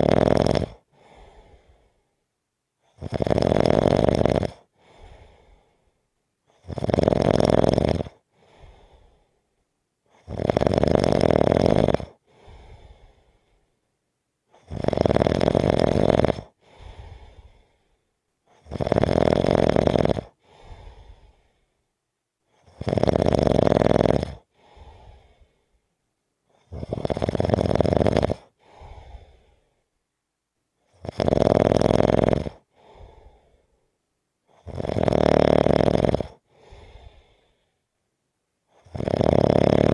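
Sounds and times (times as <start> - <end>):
person snoring: 0.0 - 0.8, 2.9 - 4.7, 6.6 - 8.8, 10.2 - 12.2, 14.6 - 17.3, 18.6 - 21.0, 22.6 - 25.3, 26.6 - 29.4, 31.0 - 33.4, 34.6 - 37.3, 38.8 - 39.9.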